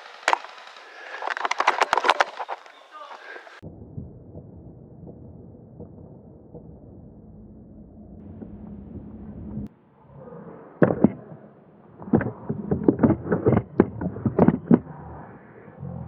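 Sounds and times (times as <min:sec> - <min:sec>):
pellets striking clicks: 0:00.0 - 0:03.6.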